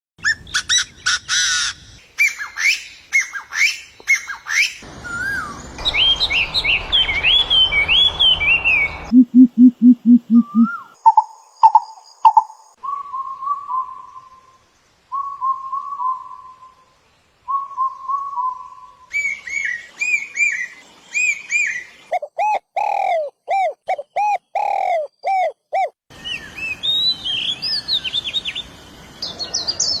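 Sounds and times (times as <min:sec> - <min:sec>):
loud two-part bird calls: 0:00.2 - 0:09.1
high bird chirps and whistles: 0:02.2 - 0:09.5, 0:10.1 - 0:11.0
warbled bird phrases: 0:03.4 - 0:11.9
low pulsed bird notes: 0:04.9 - 0:11.9.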